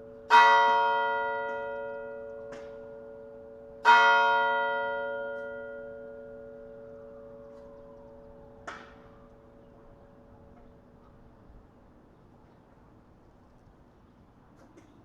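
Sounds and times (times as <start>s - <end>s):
church bell tolling: 0.0s - 10.9s.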